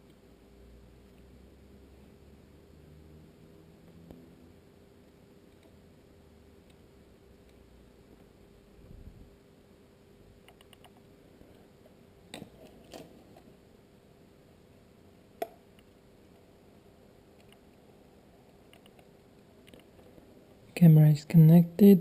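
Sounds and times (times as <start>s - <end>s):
faint plastic clicks and handling: 18.4s - 20.6s.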